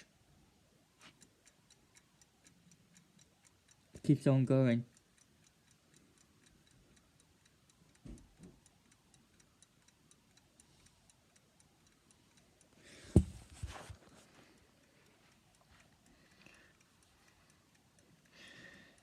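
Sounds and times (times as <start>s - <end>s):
clock movement ticking: 0.0s - 19.0s
thumps: 13.1s - 14.0s.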